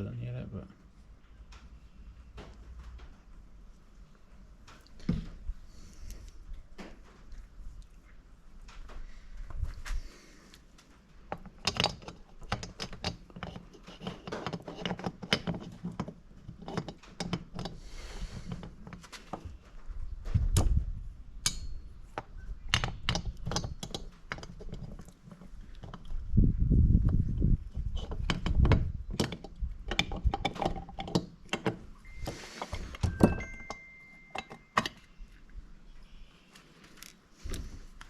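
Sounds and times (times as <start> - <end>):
tools clinking on engine parts: 32.0 - 35.2.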